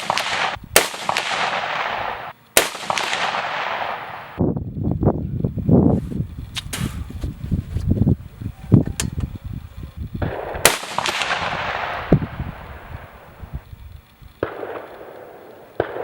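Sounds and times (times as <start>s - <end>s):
rifle shot with echo: 0.0s - 4.4s, 10.2s - 13.3s, 14.4s - 16.0s
low rumble of handling noise: 4.6s - 15.9s.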